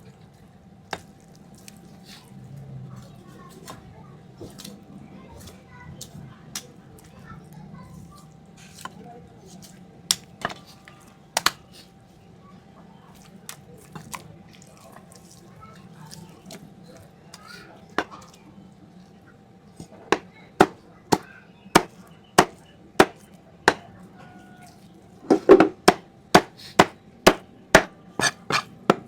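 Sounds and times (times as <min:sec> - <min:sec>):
knife chopping on cutting board: 0:20.1 - 0:23.8, 0:25.3 - 0:29.0.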